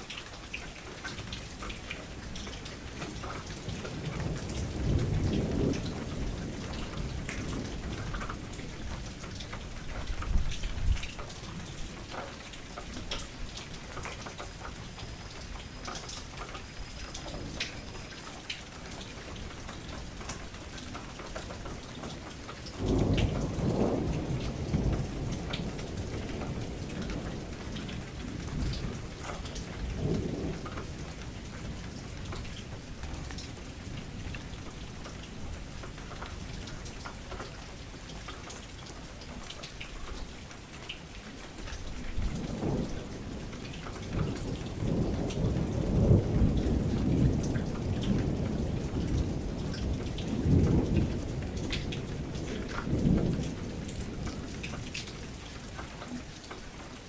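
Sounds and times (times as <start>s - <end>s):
steady rain: 0.0s - 57.0s
thunder rolling: 22.8s - 29.0s.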